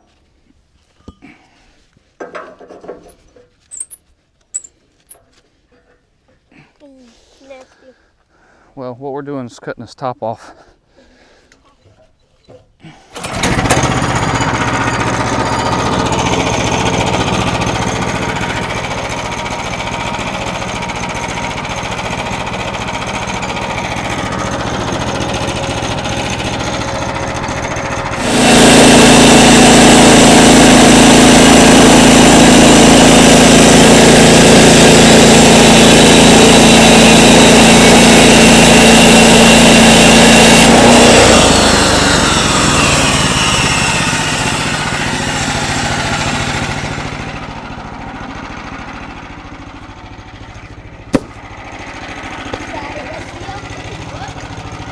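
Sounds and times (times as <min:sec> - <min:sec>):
sawmill engine running: 0:13.1 - 0:54.9.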